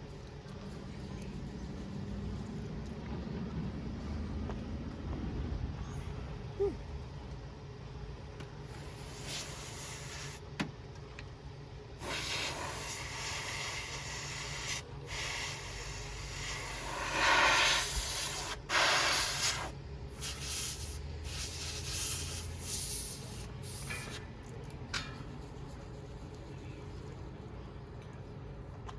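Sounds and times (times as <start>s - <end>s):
compressed air hissing: 8.7s - 10.4s, 12.0s - 24.2s.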